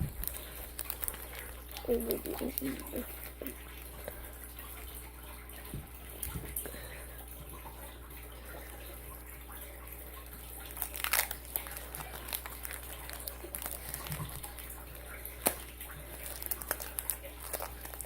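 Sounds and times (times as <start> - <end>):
foil wrapper crinkling and tearing: 0.0 - 3.5, 10.6 - 14.7, 15.3 - 18.0.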